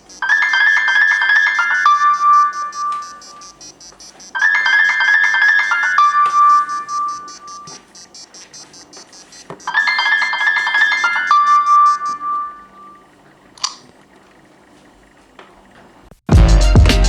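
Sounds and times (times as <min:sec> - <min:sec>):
chiming electronic alarm tone: 0:00.0 - 0:13.0.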